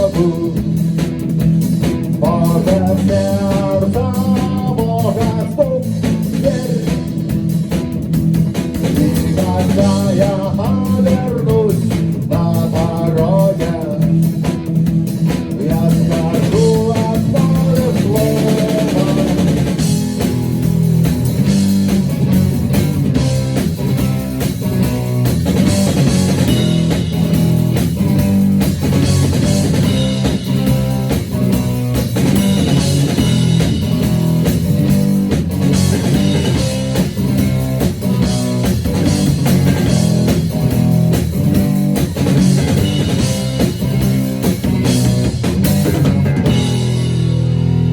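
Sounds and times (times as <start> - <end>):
rock band playing: 0.0 - 47.9
guitar melody: 18.6 - 47.9.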